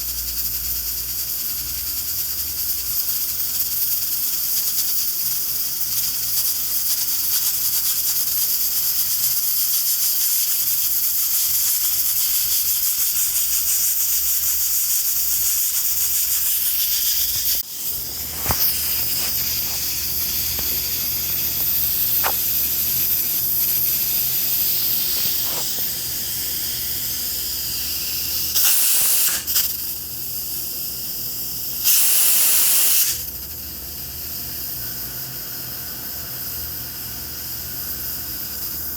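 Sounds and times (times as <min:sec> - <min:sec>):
pressure cooker hissing: 0:00.0 - 0:38.9
steam spurts: 0:01.1 - 0:29.8, 0:31.8 - 0:33.4.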